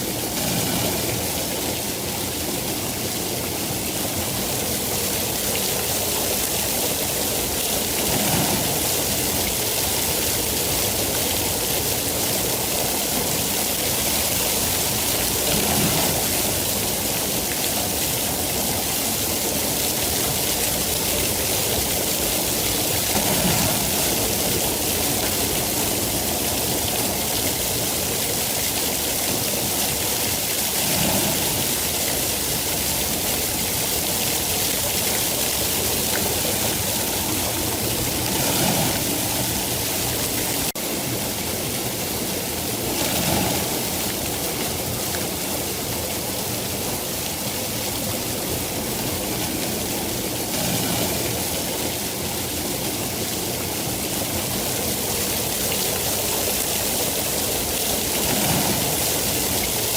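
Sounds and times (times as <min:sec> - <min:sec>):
steady rain hiss: 0:00.0 - 0:59.9.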